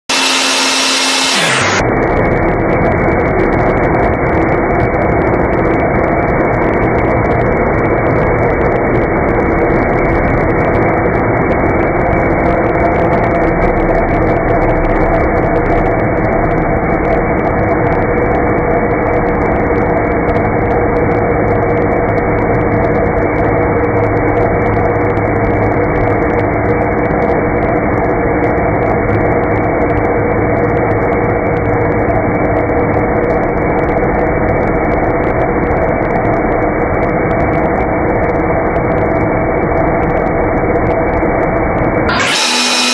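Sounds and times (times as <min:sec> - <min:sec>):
drill motor humming: 0:00.1 - 0:01.8, 0:42.1 - 0:42.9.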